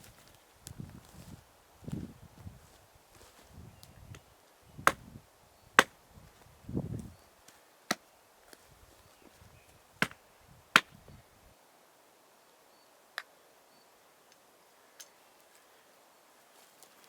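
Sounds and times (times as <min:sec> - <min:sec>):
axe chopping wood: 0:04.9 - 0:05.1, 0:10.0 - 0:10.2, 0:10.8 - 0:11.0.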